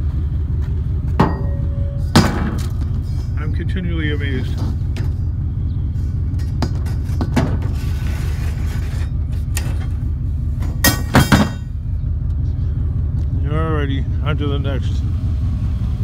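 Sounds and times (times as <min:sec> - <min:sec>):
vehicle engine rumbling: 0:00.0 - 0:16.0
scrap metal clanking: 0:01.2 - 0:03.6, 0:06.0 - 0:10.0, 0:10.6 - 0:11.8.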